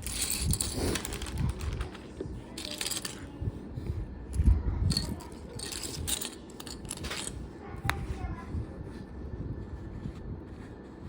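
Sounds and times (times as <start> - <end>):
plastic pieces clattering: 0.0 - 3.2, 4.9 - 7.4.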